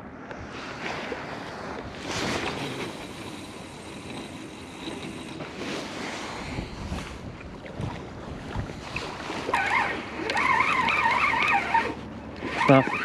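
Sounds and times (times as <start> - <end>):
ocean surf washing on beach: 0.1 - 7.4
wind buffeting microphone: 5.0 - 10.3.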